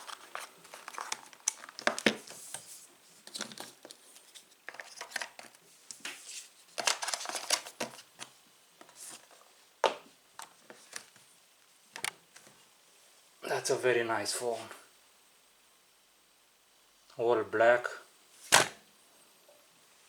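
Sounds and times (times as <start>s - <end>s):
plastic crinkling: 0.0s - 8.3s
cardboard rustling: 0.0s - 9.6s.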